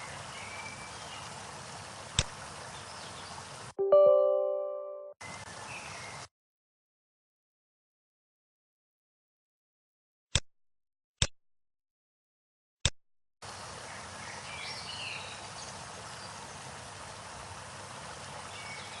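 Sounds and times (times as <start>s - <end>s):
rushing water: 0.0s - 3.8s, 13.4s - 19.0s.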